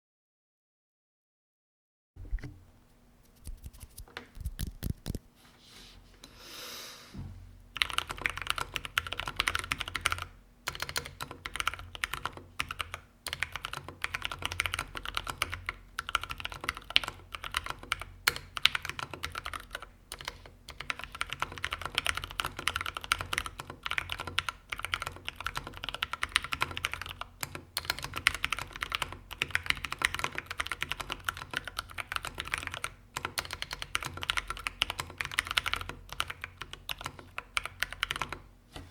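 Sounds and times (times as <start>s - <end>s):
mechanical keyboard typing: 7.8s - 38.4s.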